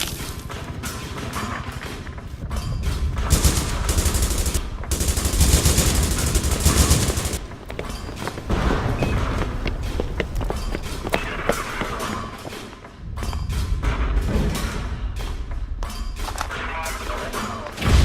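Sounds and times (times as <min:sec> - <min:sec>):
rapid bangs and crackle: 0:00.0 - 0:12.8.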